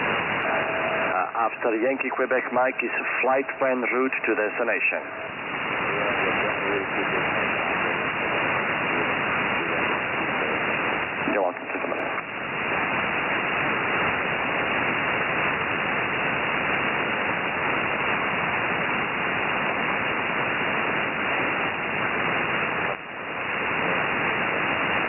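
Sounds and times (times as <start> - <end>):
shortwave radio static hiss: 0.0 - 25.0.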